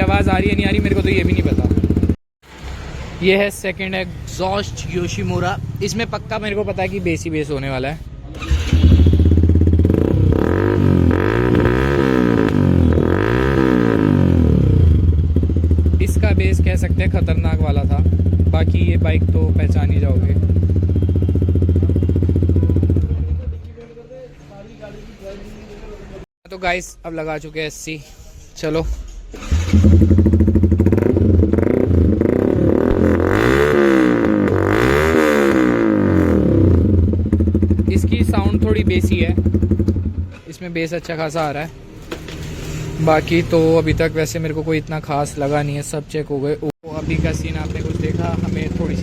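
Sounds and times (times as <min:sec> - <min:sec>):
motorcycle engine revving: 0:00.0 - 0:02.2, 0:08.3 - 0:23.5, 0:29.3 - 0:40.4, 0:46.9 - 0:49.0.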